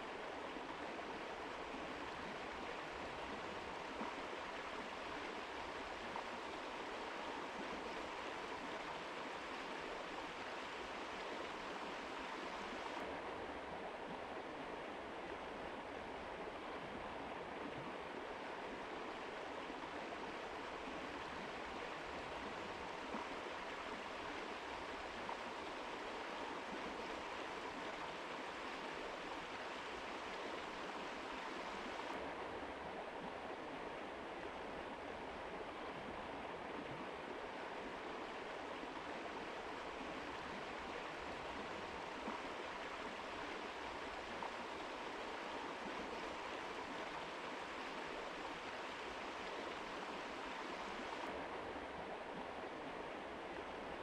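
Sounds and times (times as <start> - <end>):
river rushing over rocks: 37.1 - 54.0.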